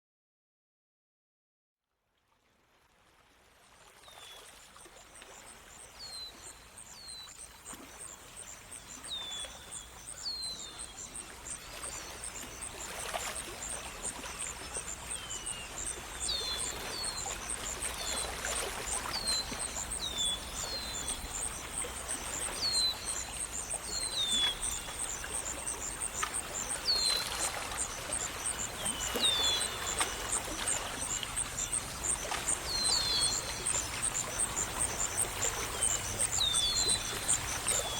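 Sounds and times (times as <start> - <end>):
running water: 2.6 - 37.9
birds chirping: 22.4 - 37.9.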